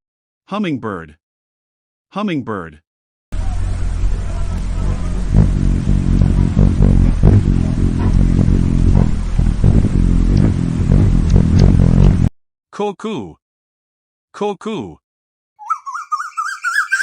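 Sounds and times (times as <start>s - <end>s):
hummingbird wings humming: 3.4s - 12.1s
short bird chirps: 15.6s - 17.0s.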